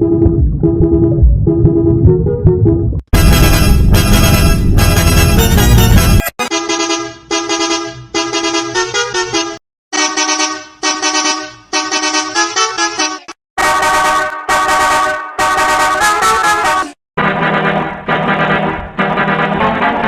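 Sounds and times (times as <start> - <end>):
musical bus horn tune: 3.2 - 17.0.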